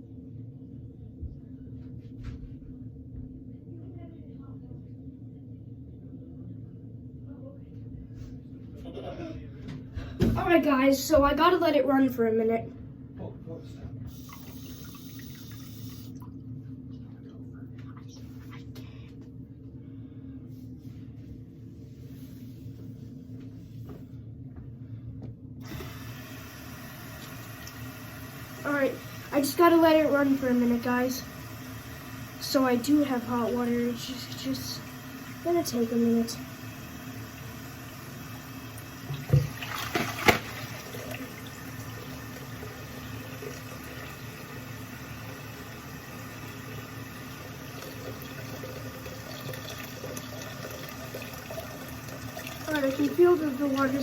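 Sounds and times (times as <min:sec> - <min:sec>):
steady low hum: 0:00.0 - 0:54.0
tap water running: 0:14.1 - 0:16.4, 0:25.6 - 0:54.0.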